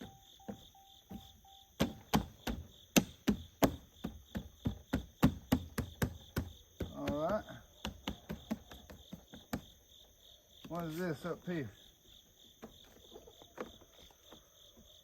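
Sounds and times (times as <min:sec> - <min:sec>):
night insects trilling: 0:00.0 - 0:15.0.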